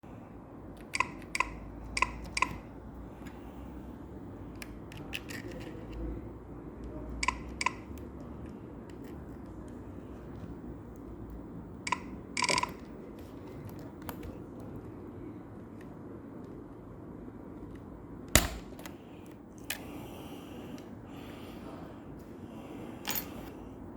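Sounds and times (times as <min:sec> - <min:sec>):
steady low hum: 0:00.0 - 0:23.9
keyboard key clicks: 0:00.8 - 0:02.6, 0:07.2 - 0:08.1, 0:11.9 - 0:12.9.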